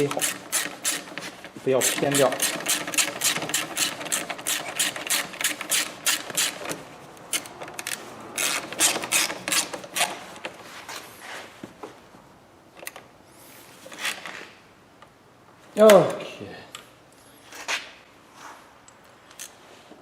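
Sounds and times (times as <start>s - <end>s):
hand ratchet clicking: 0.0s - 10.2s.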